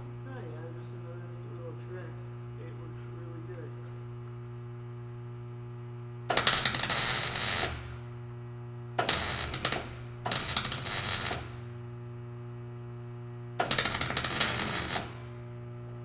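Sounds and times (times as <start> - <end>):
welding arc crackling: 6.3 - 8.1, 9.0 - 11.7, 13.6 - 15.4
welder hum: 6.3 - 8.3, 9.0 - 11.9, 13.6 - 15.6.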